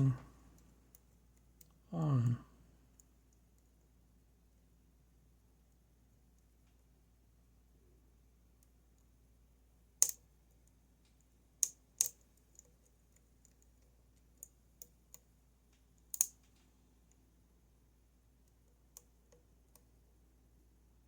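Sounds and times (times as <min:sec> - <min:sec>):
lock pick metallic clicks: 0:10.0 - 0:10.2, 0:16.1 - 0:16.6.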